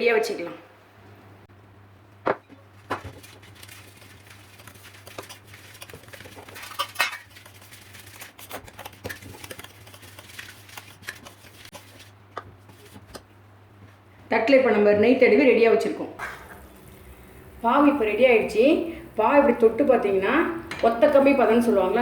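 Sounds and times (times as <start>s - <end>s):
steady low hum: 0.8s - 22.0s
utensils clinking against a plate: 6.6s - 7.3s.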